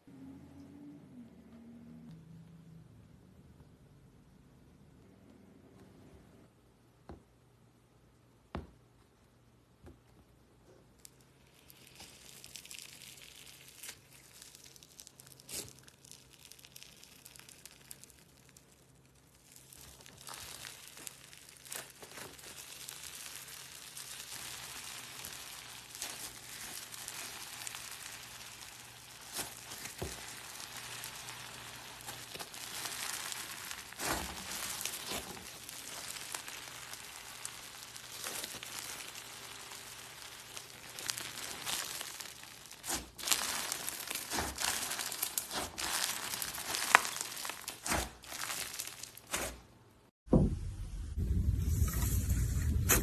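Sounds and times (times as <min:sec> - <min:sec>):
slime crackling: 0:11.0 - 0:49.7.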